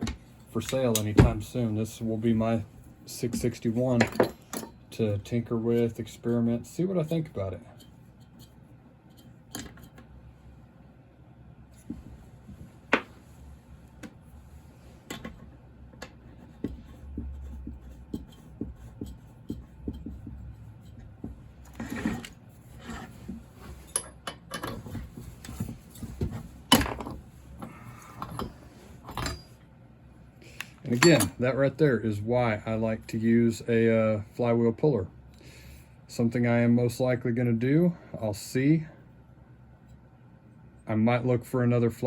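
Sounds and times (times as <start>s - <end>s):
rattling and handling noise: 11.7s - 13.4s, 14.8s - 29.6s.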